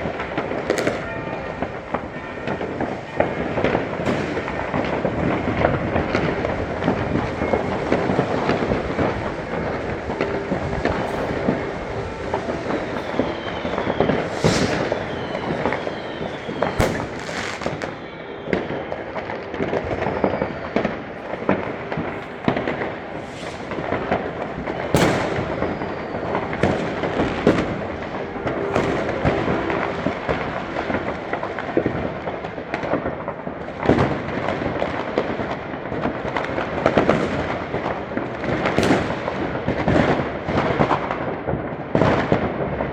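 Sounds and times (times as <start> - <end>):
falling firework whistles: 0.0 - 31.8, 36.9 - 37.9, 38.6 - 39.4
fireworks crackling: 0.0 - 42.9
loud firework bangs: 0.0 - 42.9.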